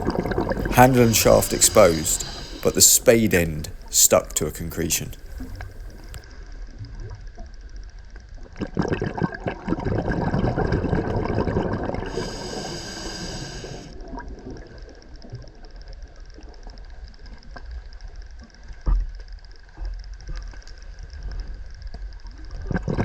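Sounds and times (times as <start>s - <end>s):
exhaled bubbles underwater: 0.0s - 4.4s, 8.6s - 14.8s
low underwater background: 0.0s - 6.2s.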